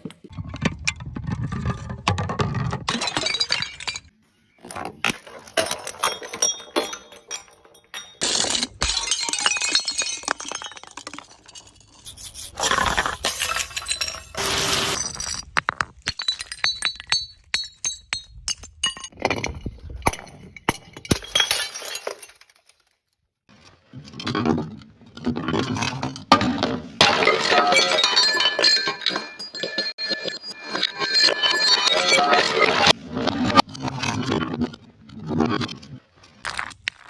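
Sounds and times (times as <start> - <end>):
glass bottles shattering: 2.8 - 4.1, 5.4 - 12.1, 12.7 - 22.9, 25.8 - 33.0
glass shards tinkling: 13.1 - 15.5, 27.2 - 33.0.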